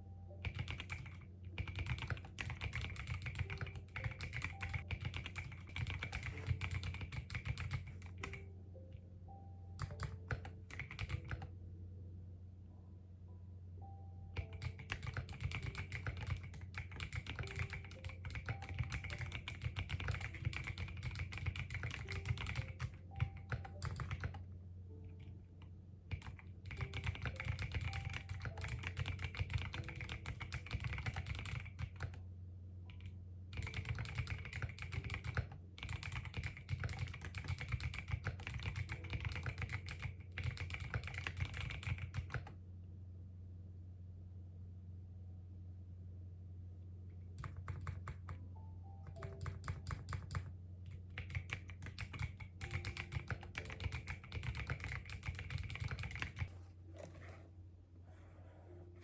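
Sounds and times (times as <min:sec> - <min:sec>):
typing on computer keyboard: 0:00.3 - 0:08.5, 0:09.8 - 0:11.5, 0:14.4 - 0:24.4, 0:26.1 - 0:32.2, 0:32.9 - 0:42.5, 0:47.4 - 0:48.4, 0:49.0 - 0:57.4.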